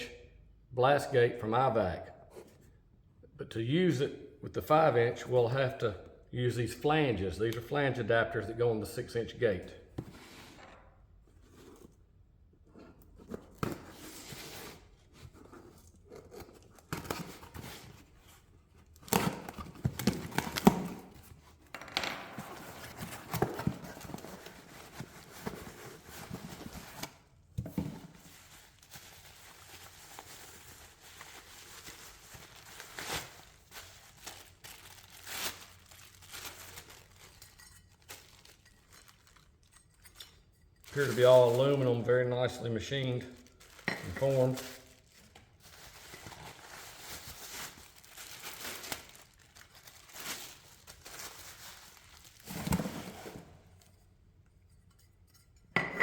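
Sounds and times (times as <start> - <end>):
packaging tearing and crinkling: 28.3 - 37.4, 43.4 - 52.8.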